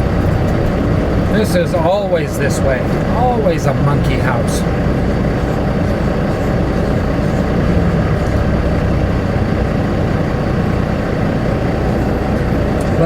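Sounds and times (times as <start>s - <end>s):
truck diesel engine idling: 0.0s - 13.0s.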